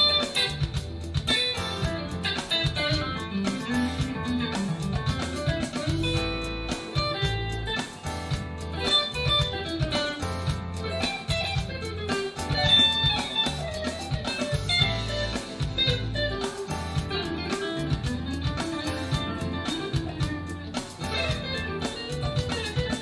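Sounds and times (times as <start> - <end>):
bass line: 0.0 - 23.0
clean electric guitar: 0.0 - 23.0
sharp percussive beat: 0.0 - 23.0.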